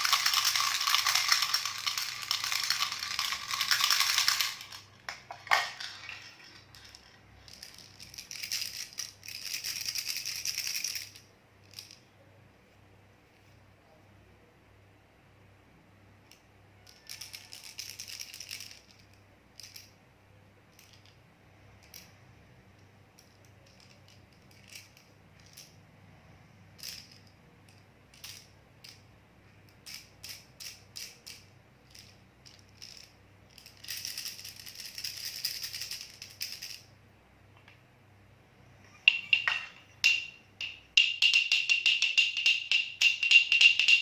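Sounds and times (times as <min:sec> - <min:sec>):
baby rattle shaking: 0:00.0 - 0:12.0, 0:16.9 - 0:20.0, 0:23.2 - 0:25.8, 0:26.8 - 0:29.0, 0:29.8 - 0:36.9, 0:39.1 - 0:44.0.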